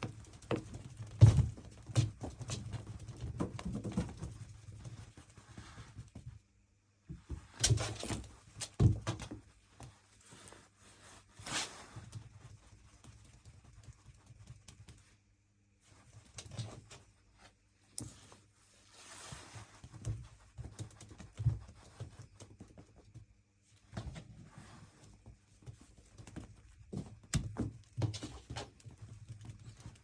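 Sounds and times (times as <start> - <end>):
cats thumping and scrambling: 0.0 - 6.4, 7.1 - 9.6, 19.7 - 30.0.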